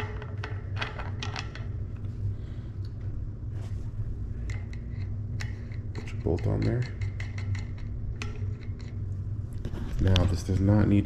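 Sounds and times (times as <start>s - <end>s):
low hum: 6.9s - 11.0s.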